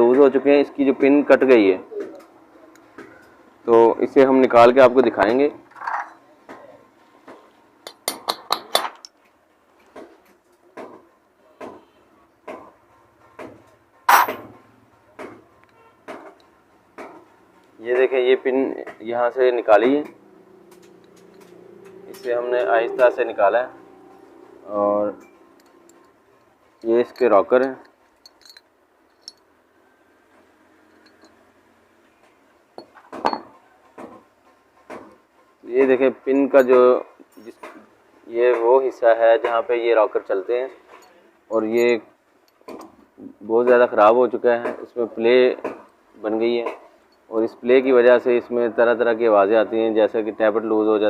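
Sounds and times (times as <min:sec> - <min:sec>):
hammer tapping metal: 0:07.9 - 0:09.0
metal parts clinking together: 0:26.8 - 0:29.5, 0:30.9 - 0:31.4.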